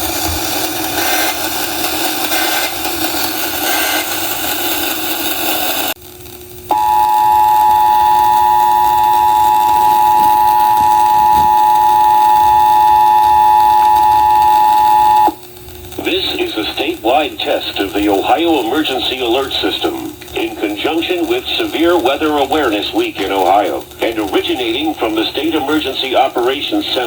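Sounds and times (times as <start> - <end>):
two-tone alert signal: 6.7 - 15.3
radio music: 6.7 - 27.0.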